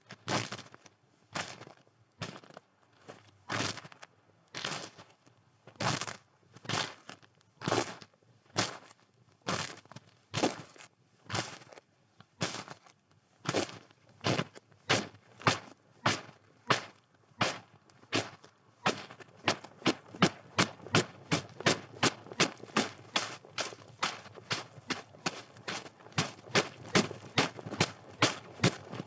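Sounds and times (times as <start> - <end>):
footsteps crunching in snow: 18.9 - 29.0.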